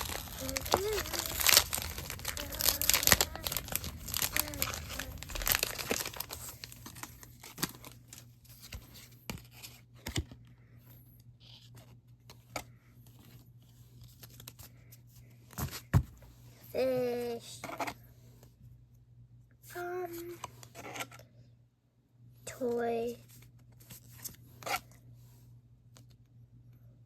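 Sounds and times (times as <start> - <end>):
crinkly wrapper tearing and crumpling: 0.0 - 8.3.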